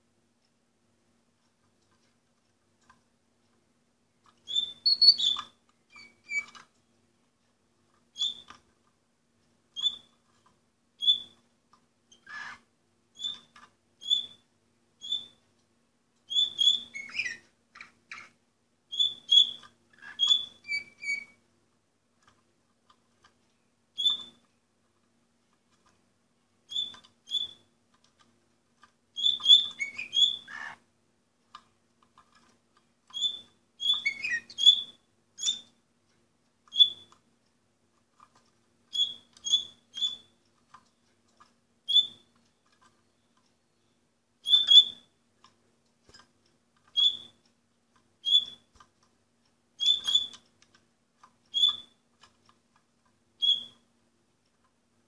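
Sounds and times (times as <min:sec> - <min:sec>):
canary chirping: 0:04.2 - 0:06.8, 0:07.9 - 0:08.7, 0:09.7 - 0:15.5, 0:16.2 - 0:21.5, 0:22.2 - 0:24.6, 0:26.6 - 0:30.9, 0:31.5 - 0:35.8, 0:36.6 - 0:37.3, 0:38.0 - 0:49.0, 0:49.7 - 0:52.6, 0:53.2 - 0:53.9.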